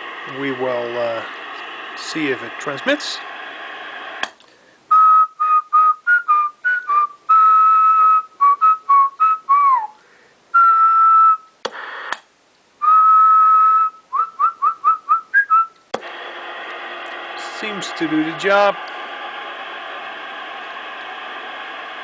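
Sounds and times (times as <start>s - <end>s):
radio static burst: 0.0s - 4.3s
radio microphone clicks: 3.4s - 4.5s, 11.6s - 12.3s
person whistling: 4.9s - 10.0s, 10.6s - 11.5s, 12.8s - 15.8s.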